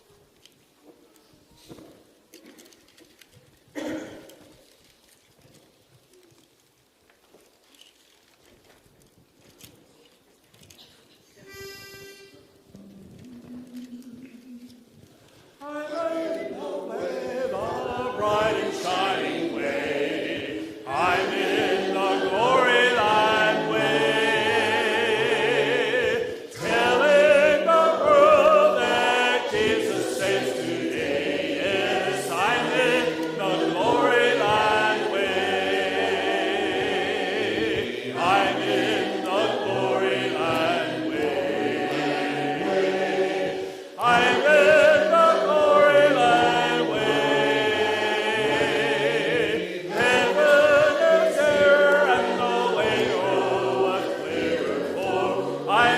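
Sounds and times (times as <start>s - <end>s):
group singing a worship song: 15.2s - 55.9s.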